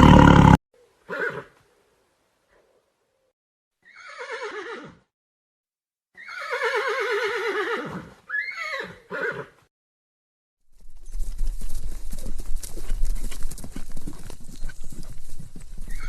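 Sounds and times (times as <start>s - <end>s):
horse whinnying: 0.0s - 1.5s, 3.8s - 5.0s, 6.2s - 9.6s.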